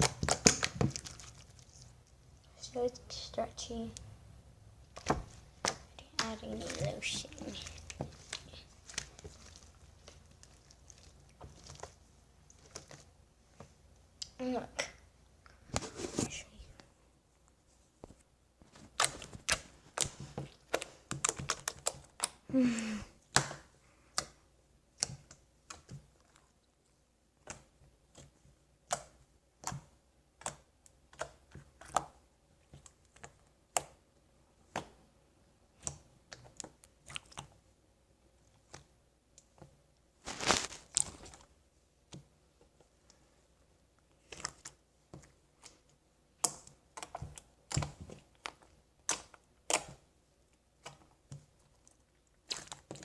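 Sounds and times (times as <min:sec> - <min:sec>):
slime clicking and popping: 0:00.0 - 0:01.4, 0:46.4 - 0:50.0.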